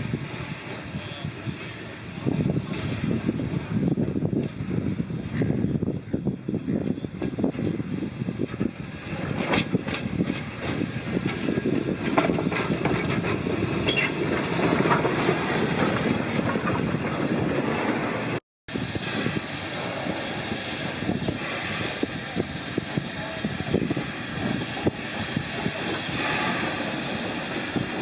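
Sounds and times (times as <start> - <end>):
train rumbling along track: 0.0 - 28.0
wheels clicking on rails: 7.2 - 18.4.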